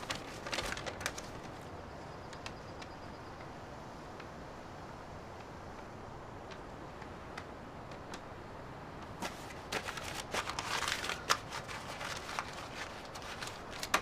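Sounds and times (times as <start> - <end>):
rustling and crackling clicks: 0.0 - 3.5, 9.0 - 14.0
steady background hiss: 0.0 - 14.0.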